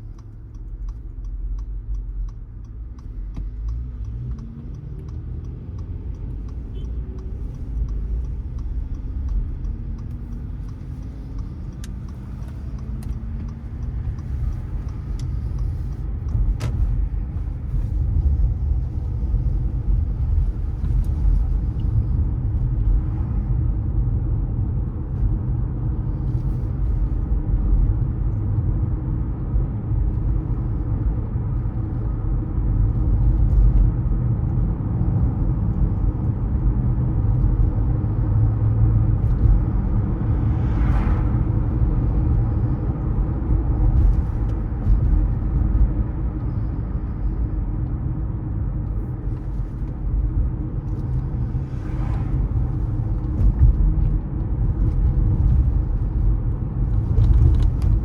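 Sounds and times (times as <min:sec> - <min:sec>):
faint clicks: 0:00.0 - 0:18.9
car engine and tyre rumble: 0:00.0 - 0:58.0.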